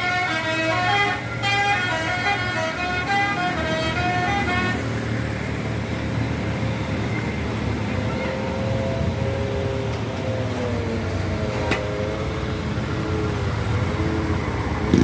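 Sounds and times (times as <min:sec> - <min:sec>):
multi-tone bus horn melody: 0:00.0 - 0:05.4
bus engines and traffic rumble: 0:00.0 - 0:15.0.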